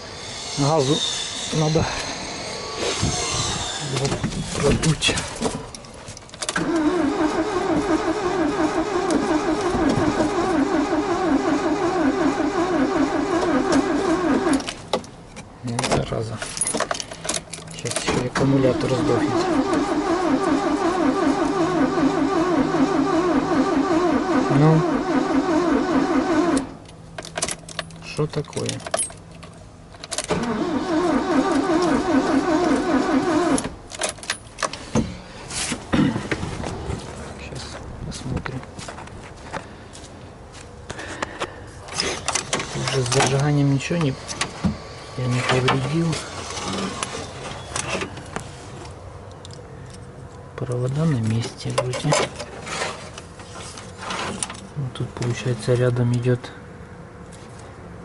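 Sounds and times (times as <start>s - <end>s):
starter motor cranking engine: 6.5s - 14.8s, 18.4s - 26.7s, 30.3s - 33.7s, 44.0s - 48.0s.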